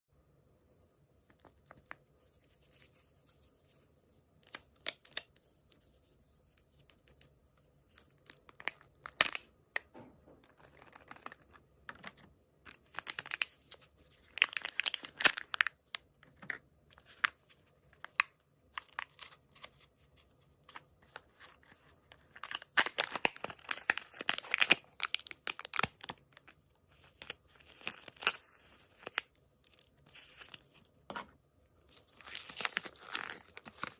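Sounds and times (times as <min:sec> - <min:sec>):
packaging crinkling and tearing: 0:12.7 - 0:19.8, 0:20.7 - 0:30.8, 0:31.8 - 0:33.9.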